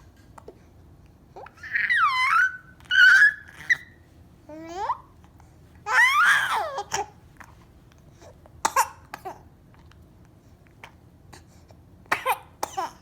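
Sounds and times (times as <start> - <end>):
baby squealing: 1.4 - 4.0, 5.9 - 6.8
baby coughing bursts: 8.6 - 9.4, 12.1 - 13.0.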